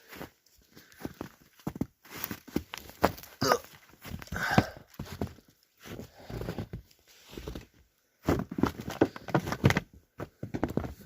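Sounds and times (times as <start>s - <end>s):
footsteps crunching and scraping: 0.0s - 11.0s.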